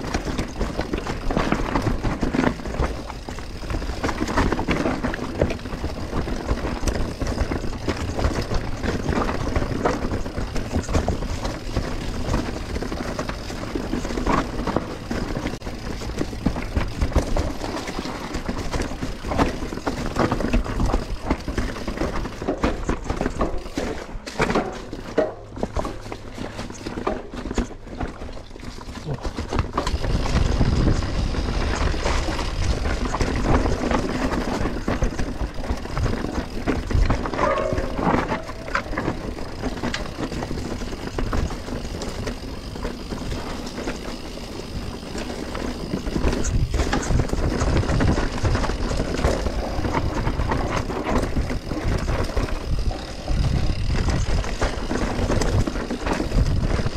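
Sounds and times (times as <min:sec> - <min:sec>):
bike clattering and rattling: 0:00.0 - 0:56.9
tyres on dirt: 0:00.0 - 0:56.9
wind rumbling on microphone: 0:28.5 - 0:56.9.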